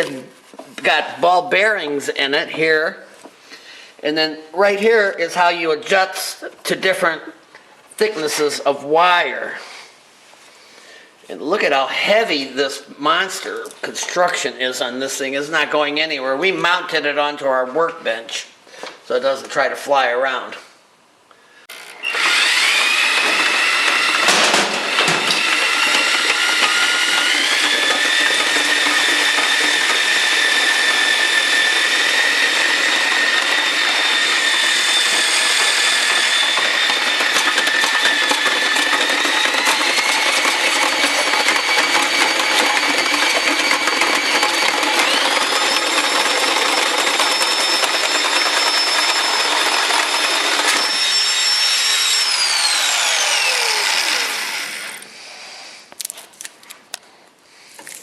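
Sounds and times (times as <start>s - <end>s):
electric drill motor whining: 21.7s - 55.1s.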